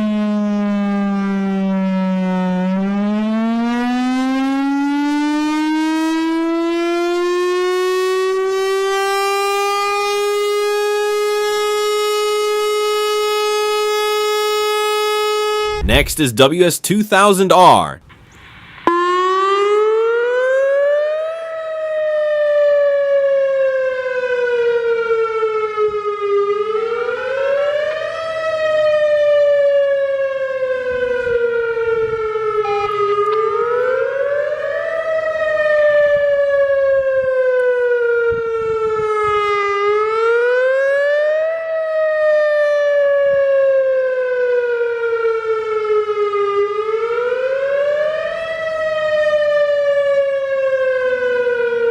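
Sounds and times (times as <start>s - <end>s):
warning siren wailing: 0.0s - 15.9s, 18.7s - 51.9s.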